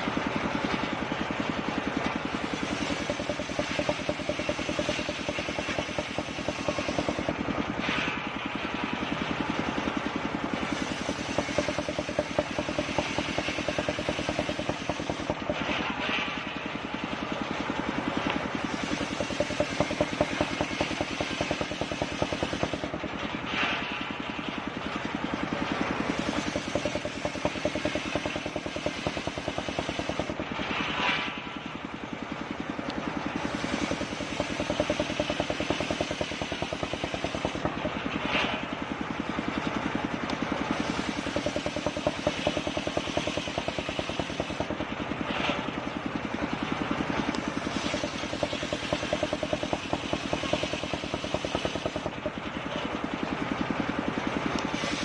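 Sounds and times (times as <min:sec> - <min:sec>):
circular saw cutting wood: 0:02.3 - 0:08.2, 0:10.6 - 0:16.0, 0:18.5 - 0:23.0, 0:26.0 - 0:30.4, 0:33.3 - 0:38.5, 0:40.7 - 0:44.8, 0:47.3 - 0:52.3.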